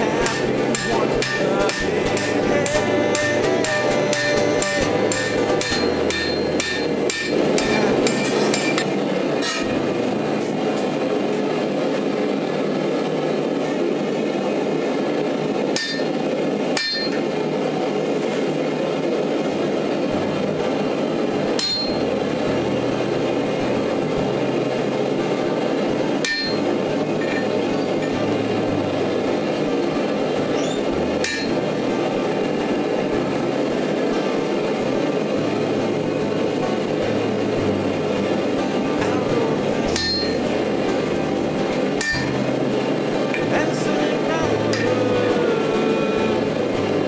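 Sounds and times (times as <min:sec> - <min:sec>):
steady rushing noise: 0:00.0 - 0:47.0
hammer ringing on anvil: 0:03.2 - 0:09.8, 0:15.8 - 0:16.1, 0:16.8 - 0:17.2, 0:21.6 - 0:22.0, 0:26.2 - 0:26.6, 0:30.6 - 0:31.5, 0:40.0 - 0:40.4, 0:42.0 - 0:42.4.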